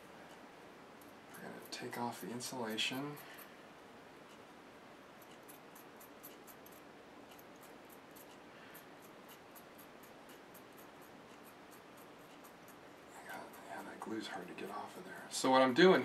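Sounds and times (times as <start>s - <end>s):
knife scraping wire: 5.2s - 14.7s.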